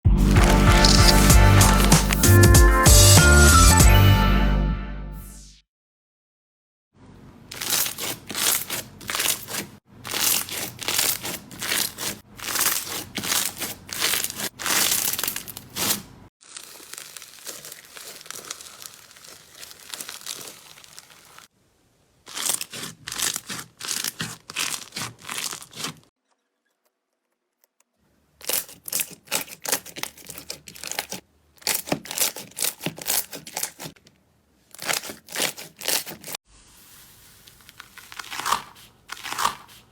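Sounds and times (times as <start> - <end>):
slime crackling and popping: 0.3 - 2.4, 7.5 - 21.5, 22.3 - 26.0, 28.4 - 34.0, 37.5 - 39.8
soft steady slime hiss: 16.5 - 22.3, 36.5 - 39.1.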